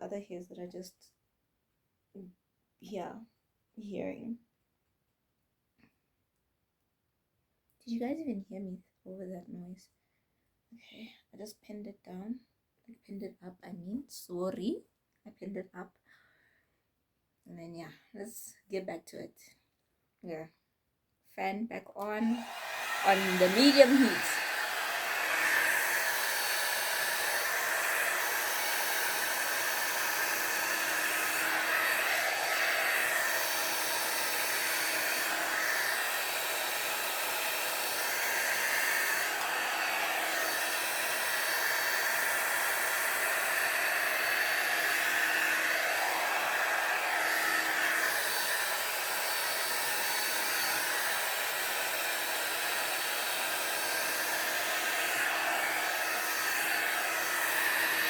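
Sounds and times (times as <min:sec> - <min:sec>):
hair dryer whooshing: 0:22.0 - 0:58.0.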